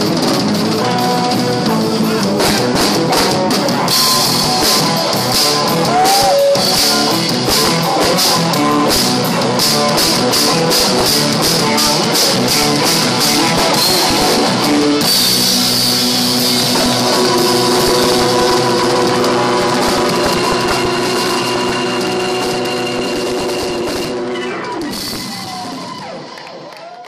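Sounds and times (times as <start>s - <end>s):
drums striking: 0.0s - 26.0s
rock music: 0.0s - 26.7s.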